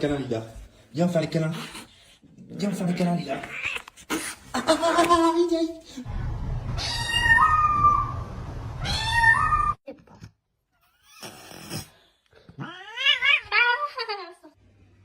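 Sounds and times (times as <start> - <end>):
cat meowing: 6.8 - 8.1, 8.8 - 9.8.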